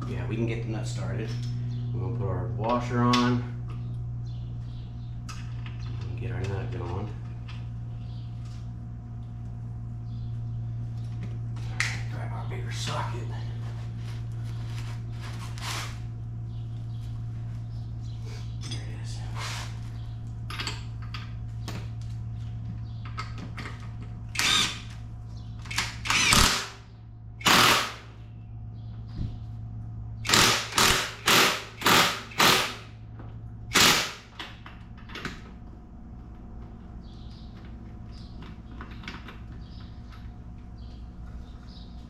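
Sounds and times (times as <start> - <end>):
steady low hum: 0.0 - 42.0
impact wrench bursts: 24.3 - 24.9, 25.7 - 26.8, 27.4 - 28.1, 30.2 - 32.9, 33.7 - 34.4.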